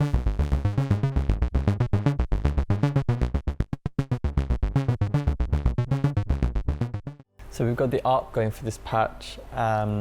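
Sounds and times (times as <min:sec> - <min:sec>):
synthesizer arpeggio: 0:00.0 - 0:07.4
synthesizer bass: 0:00.0 - 0:07.4.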